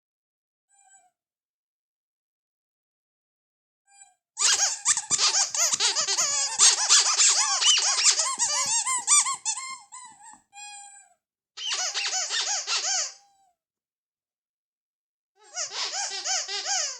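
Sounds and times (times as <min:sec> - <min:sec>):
rubber squeaky toy squeaking: 0:03.9 - 0:13.5, 0:15.4 - 0:16.9.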